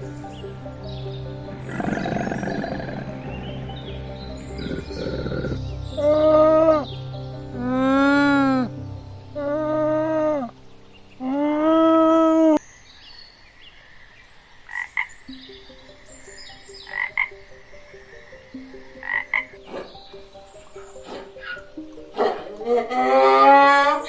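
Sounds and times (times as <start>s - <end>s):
animal calls: 1.6s - 6.9s, 13.3s - 24.0s.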